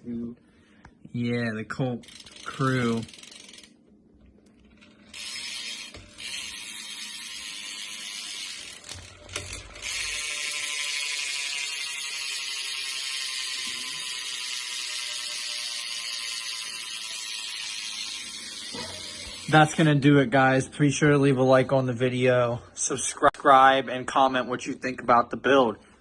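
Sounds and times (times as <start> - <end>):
bicycle hub freewheel clicking: 1.8 - 3.8, 4.6 - 20.0.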